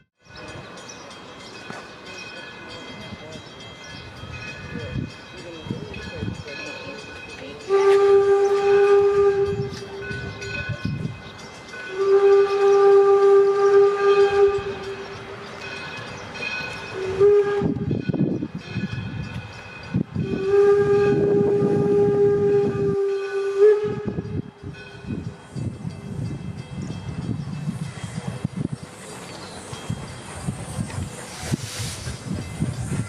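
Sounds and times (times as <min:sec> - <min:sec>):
moving train rumbling: 0:00.0 - 0:33.0
steam whistle blasts: 0:07.6 - 0:10.1, 0:11.9 - 0:15.2, 0:17.0 - 0:18.0, 0:20.2 - 0:24.5.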